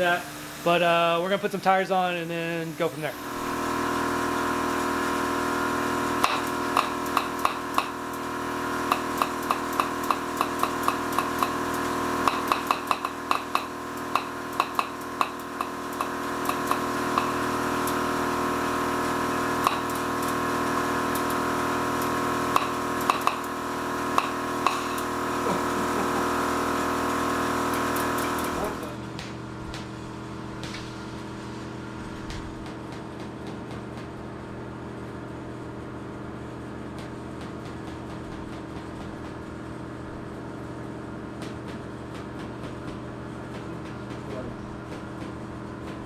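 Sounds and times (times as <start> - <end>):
mechanical hum: 0.0 - 46.0
hand tools clicking and knocking: 6.2 - 8.0, 8.9 - 18.0, 22.0 - 23.6.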